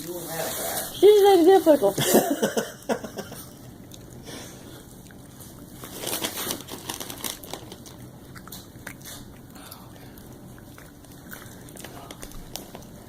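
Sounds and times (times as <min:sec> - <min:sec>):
chips crunching: 0:05.2 - 0:09.5
chip bag crinkling: 0:05.4 - 0:09.3.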